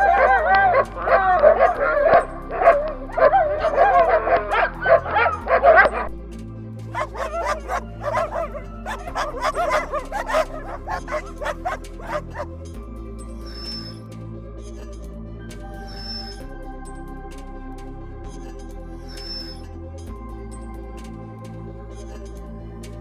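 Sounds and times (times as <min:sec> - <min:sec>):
dogs barking and yelping: 0:00.0 - 0:06.2, 0:06.9 - 0:12.5
dogs yipping and whining: 0:00.0 - 0:06.2, 0:06.9 - 0:12.5
background music: 0:00.0 - 0:23.0.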